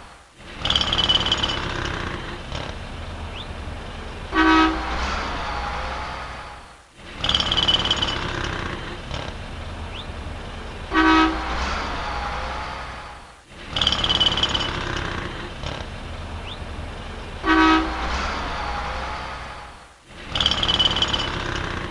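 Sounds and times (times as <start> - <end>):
passing vehicles rumble: 0.0 - 21.9
car horn honk: 4.3 - 5.0, 10.9 - 11.8, 17.4 - 19.2.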